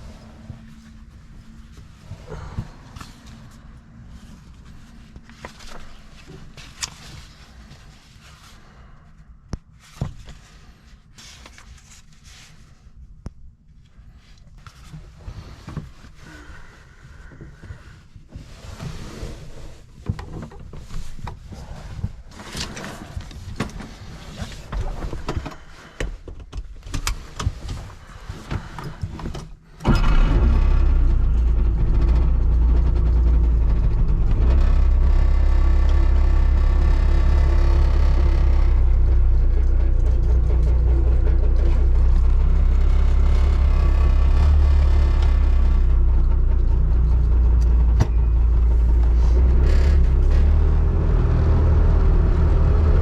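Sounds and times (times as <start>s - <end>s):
car engine starting and idling: 0.0s - 9.2s, 26.8s - 53.0s.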